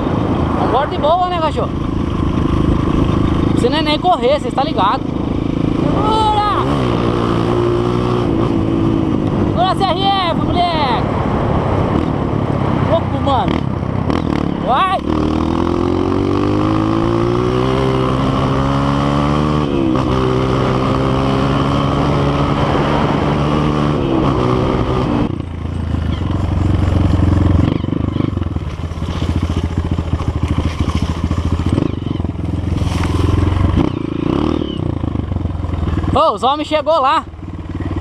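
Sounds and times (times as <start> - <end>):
motorbike engine accelerating: 0.0 - 38.0.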